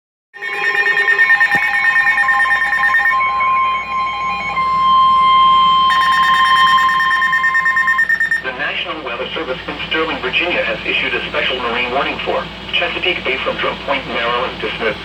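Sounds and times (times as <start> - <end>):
pulsing electronic alert tone: 0.4 - 8.4
steady warning tone: 0.4 - 15.0.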